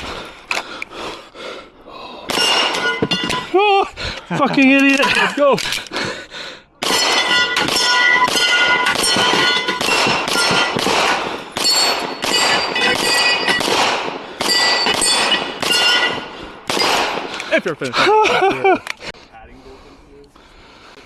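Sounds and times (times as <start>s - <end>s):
rifle shots: 2.3s - 3.0s, 6.8s - 17.4s
metallic ringing of steel targets: 2.3s - 3.6s, 6.8s - 17.2s.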